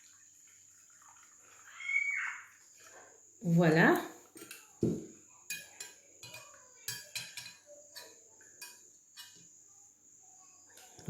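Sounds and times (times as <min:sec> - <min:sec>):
dishes clinking: 0:04.4 - 0:09.5.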